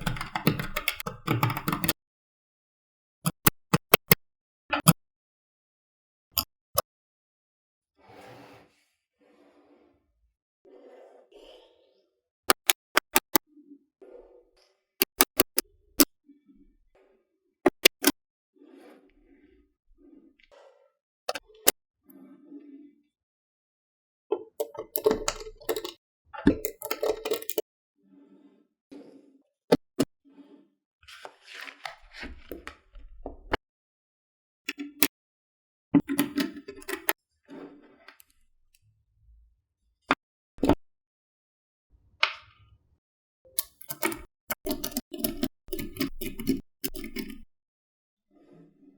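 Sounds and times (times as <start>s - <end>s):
magnetic balls snapping together: 12.5s - 13.4s, 15.0s - 15.6s, 17.7s - 18.1s.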